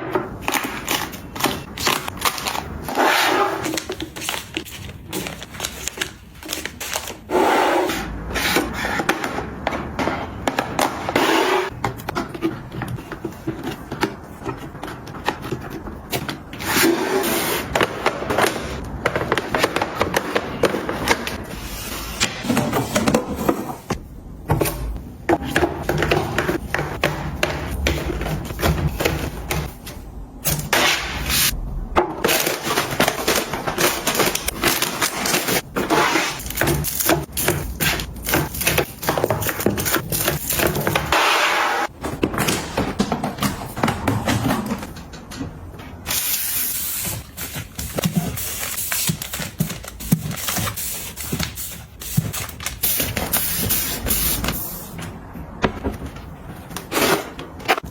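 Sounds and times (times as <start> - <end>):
household items clicking and knocking: 8.1 - 21.5, 32.0 - 57.9.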